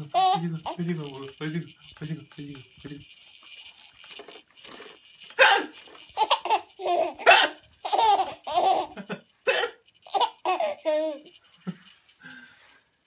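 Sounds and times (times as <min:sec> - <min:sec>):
baby laughing: 0:00.1 - 0:00.8, 0:05.4 - 0:11.3
man hiccuping: 0:05.4 - 0:05.8, 0:07.3 - 0:07.6, 0:09.5 - 0:09.8.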